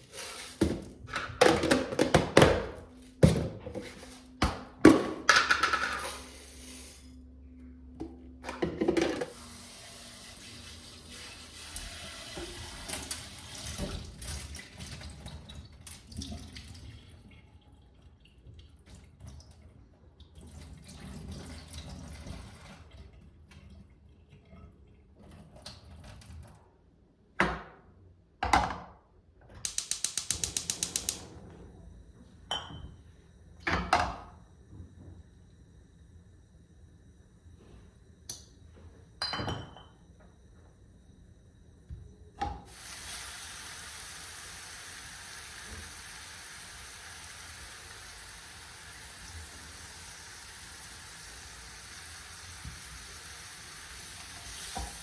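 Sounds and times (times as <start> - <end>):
tap water running into sink: 9.0 - 16.9, 29.7 - 31.2, 42.4 - 55.0.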